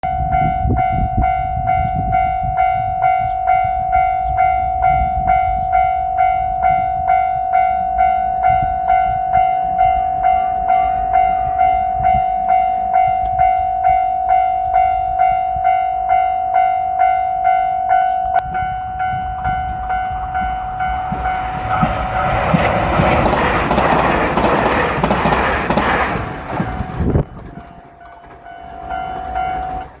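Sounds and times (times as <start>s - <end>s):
railroad crossing bell ringing: 0.0s - 30.0s
train rushing past: 18.4s - 30.0s.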